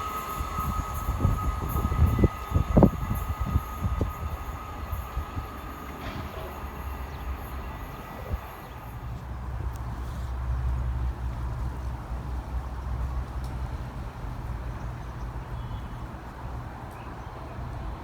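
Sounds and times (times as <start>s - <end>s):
train wheels knocking on rail joints: 0.0s - 9.3s
steady high whine: 0.0s - 9.8s
train rumble: 0.0s - 18.0s.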